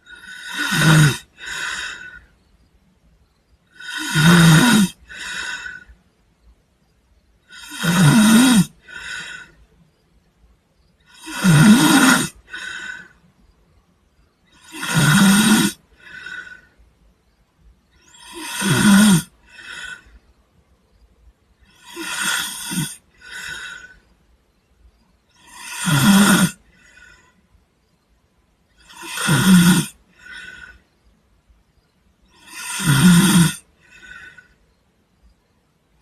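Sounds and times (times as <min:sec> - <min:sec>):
person snoring: 0:00.0 - 0:02.3, 0:03.7 - 0:05.9, 0:07.5 - 0:09.6, 0:11.1 - 0:13.2, 0:14.5 - 0:16.7, 0:18.0 - 0:20.1, 0:21.6 - 0:24.0, 0:25.4 - 0:27.2, 0:28.8 - 0:30.8, 0:32.3 - 0:34.5.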